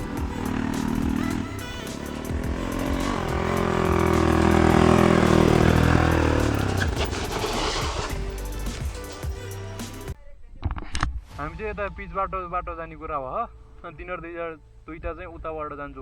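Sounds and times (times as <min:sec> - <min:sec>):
motorcycle engine: 0:00.0 - 0:10.2.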